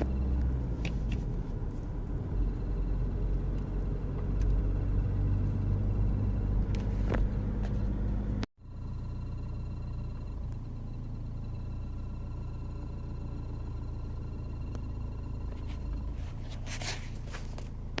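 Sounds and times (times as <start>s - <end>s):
diesel engine low rumble: 0.0s - 18.0s
brief rustle: 15.6s - 17.8s.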